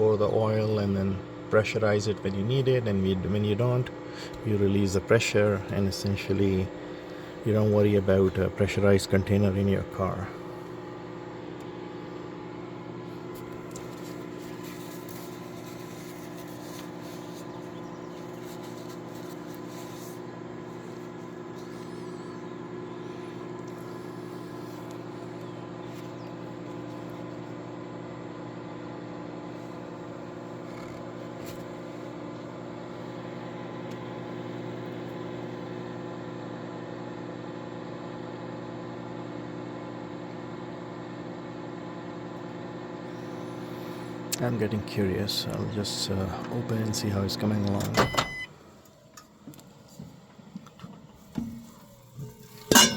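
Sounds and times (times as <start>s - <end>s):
microwave oven humming: 0.0s - 52.9s.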